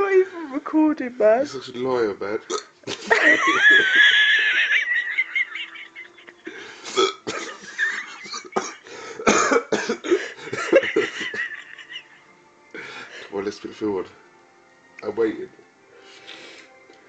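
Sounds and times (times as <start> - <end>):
person hiccuping: 6.9 - 7.4.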